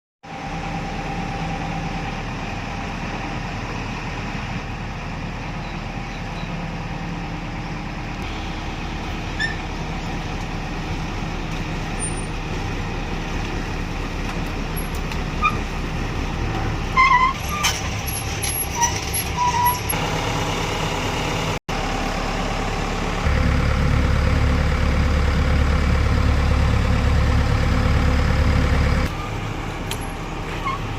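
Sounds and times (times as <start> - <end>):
excavator diesel engine running: 0.2 - 30.9.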